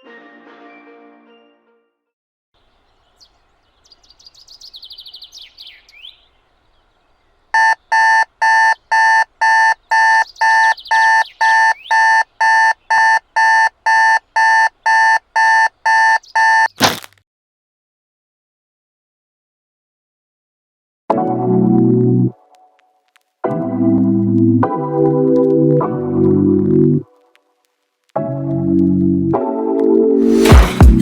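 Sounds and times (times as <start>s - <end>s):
faint birdsong chirping: 2.6s - 16.8s
alarm clock beeping: 7.6s - 16.7s.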